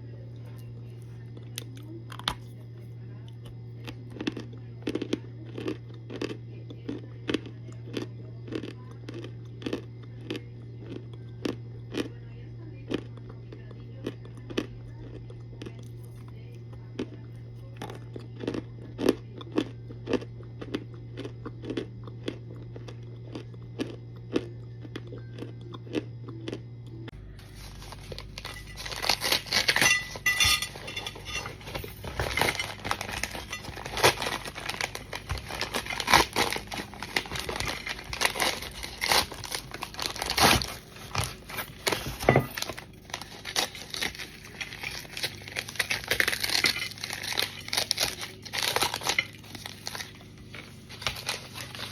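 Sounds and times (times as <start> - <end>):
low hum: 21.9 - 51.9
starch bricks crunching: 27.4 - 51.9.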